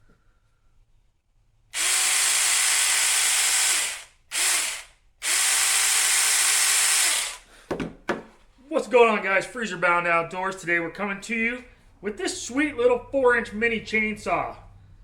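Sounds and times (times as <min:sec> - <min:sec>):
battery mini chainsaw whining: 0:01.8 - 0:07.5.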